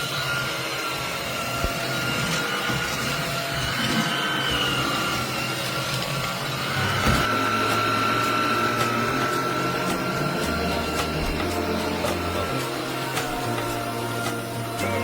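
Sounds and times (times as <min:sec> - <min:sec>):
cordless vacuum running: 0:00.0 - 0:15.0.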